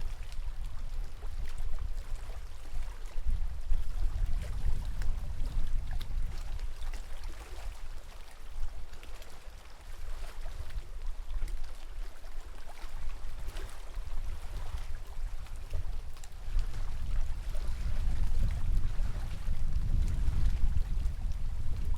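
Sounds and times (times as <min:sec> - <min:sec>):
lake water splashing and lapping: 0:00.0 - 0:21.9
gusty low rumble: 0:16.5 - 0:21.9.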